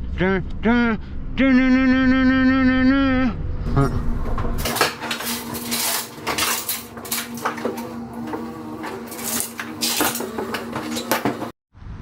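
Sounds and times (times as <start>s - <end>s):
metal objects clattering: 3.7s - 11.5s.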